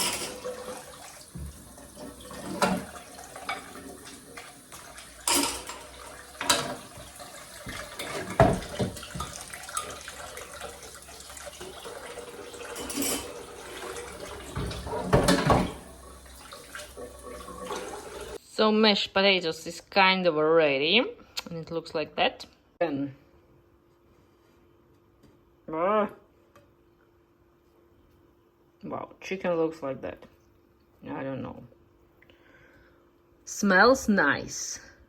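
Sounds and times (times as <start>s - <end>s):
pots and dishes clinking: 0.0s - 0.9s, 1.5s - 10.1s, 11.6s - 16.0s
tap water running: 0.0s - 18.4s.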